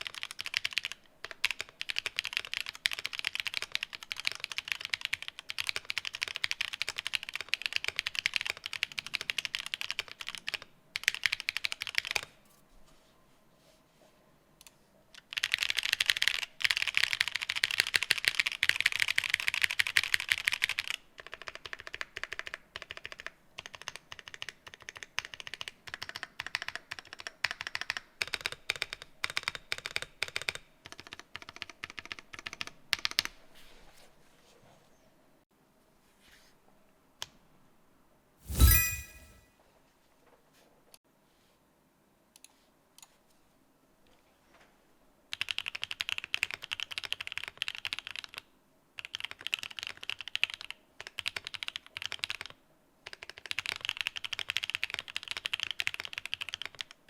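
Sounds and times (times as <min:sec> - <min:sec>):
mechanical keyboard typing: 0:00.0 - 0:12.3, 0:15.2 - 0:33.3, 0:45.3 - 0:57.0.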